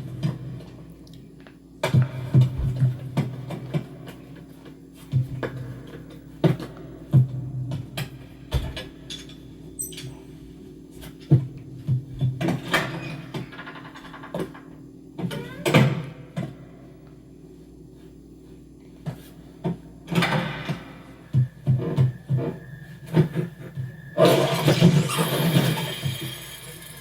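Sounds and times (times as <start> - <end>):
steady low hum: 0.0 - 27.0
noisy swells: 20.4 - 27.0.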